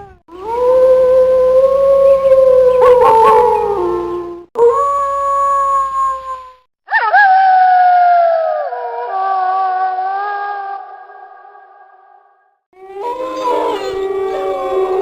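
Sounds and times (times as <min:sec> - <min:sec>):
wolves howling: 0:00.0 - 0:06.2, 0:12.8 - 0:15.0.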